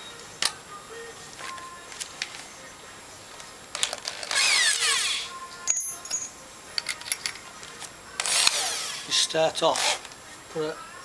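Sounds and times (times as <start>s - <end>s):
metal tools clicking on workbench: 5.7s - 7.5s.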